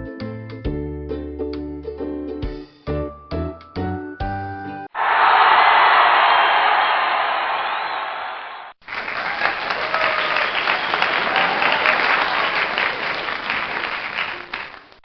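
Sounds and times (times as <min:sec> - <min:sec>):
music: 0:00.0 - 0:04.9
crowd applauding: 0:05.0 - 0:15.0.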